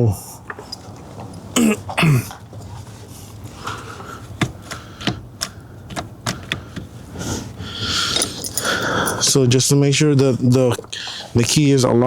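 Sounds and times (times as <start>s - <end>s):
short grunt: 1.6s - 2.3s
metal parts clicking: 8.0s - 9.3s.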